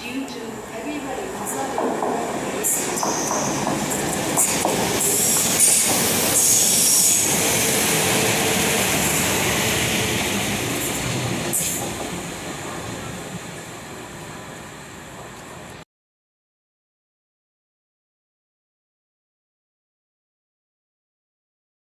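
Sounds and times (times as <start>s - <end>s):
train running past: 0.0s - 15.8s
high-pitched wheel squeal: 5.6s - 7.3s.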